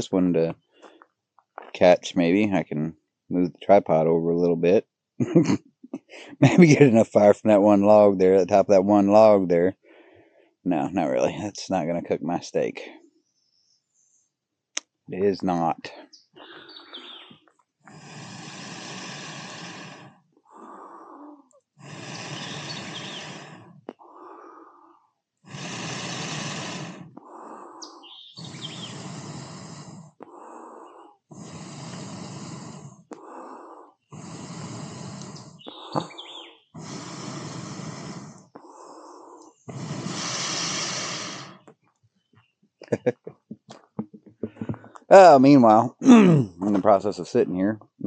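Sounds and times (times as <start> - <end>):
person inhaling: 6.0 - 6.4, 9.8 - 10.6, 15.9 - 41.7, 44.4 - 45.1
blowing through a tube: 16.4 - 24.8, 25.4 - 41.8.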